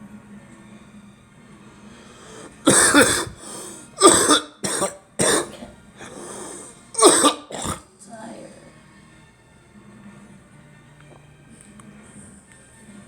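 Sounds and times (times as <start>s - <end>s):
girl coughing: 2.6s - 7.8s.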